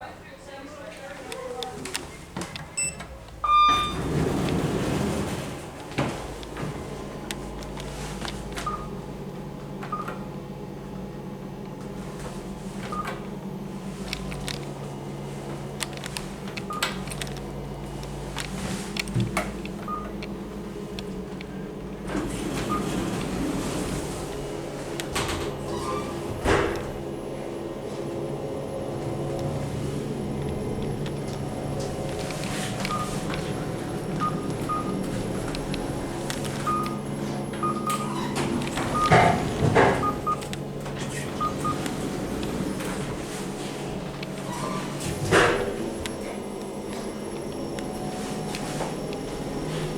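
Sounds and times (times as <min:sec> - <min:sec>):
steady low hum: 0:00.0 - 0:49.9
clicks: 0:01.3 - 0:04.7, 0:15.7 - 0:23.4, 0:30.3 - 0:43.4
elevator button beeps: 0:02.6 - 0:05.0, 0:08.4 - 0:09.0, 0:09.8 - 0:10.3, 0:12.9 - 0:13.3, 0:16.6 - 0:17.3, 0:19.0 - 0:20.3, 0:20.9 - 0:23.9, 0:28.6 - 0:43.4, 0:44.0 - 0:49.9.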